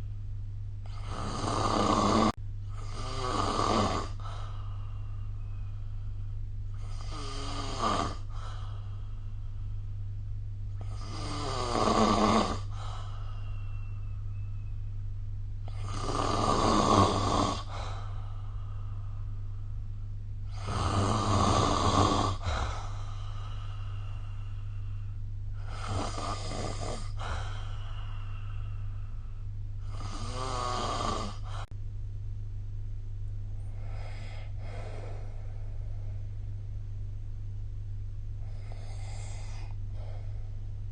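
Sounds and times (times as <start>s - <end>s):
steady low hum: 0.0s - 40.9s
person snoring: 0.8s - 5.8s, 6.7s - 9.3s, 10.8s - 14.0s, 15.6s - 19.4s, 20.4s - 31.7s, 33.6s - 36.2s, 38.4s - 40.5s.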